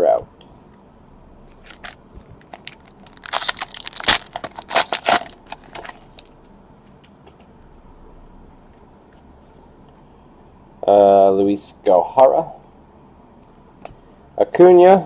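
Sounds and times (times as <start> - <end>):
plastic wrapper crinkling and tearing: 1.5 - 6.3.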